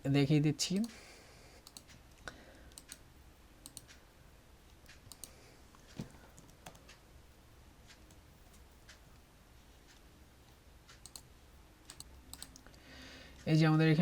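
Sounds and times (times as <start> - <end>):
mouse and keyboard clicks: 1.6 - 2.0, 3.6 - 4.0, 4.8 - 7.0, 10.9 - 11.3, 11.9 - 12.7.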